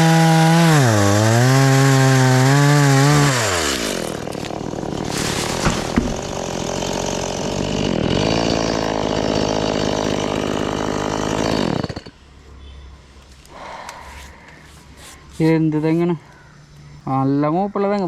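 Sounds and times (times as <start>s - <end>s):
chainsaw running at high revs: 0.0s - 12.1s
sharp knocks: 5.5s - 6.4s.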